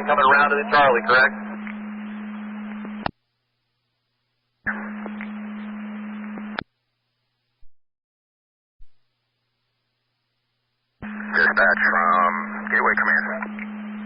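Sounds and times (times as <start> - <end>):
radio static hiss with hum: 0.0 - 7.6, 8.9 - 14.0
radio squelch tail click: 1.6 - 3.2, 4.7 - 6.7.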